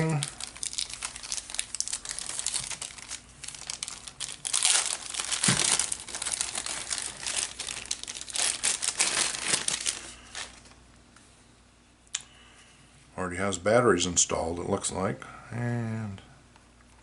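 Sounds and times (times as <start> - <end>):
packaging crinkling: 0.0 - 10.8.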